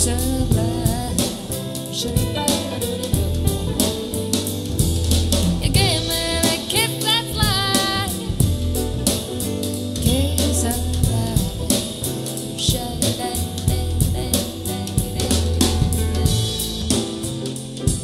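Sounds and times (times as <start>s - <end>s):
deep bass line: 0.0s - 18.0s
drum kit beat: 0.0s - 18.0s.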